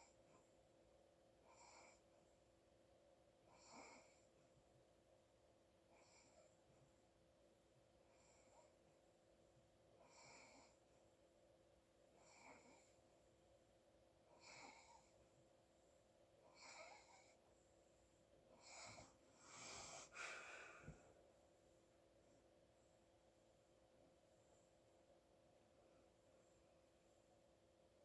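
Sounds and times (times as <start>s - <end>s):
sleeping person breathing: 18.5s - 21.2s.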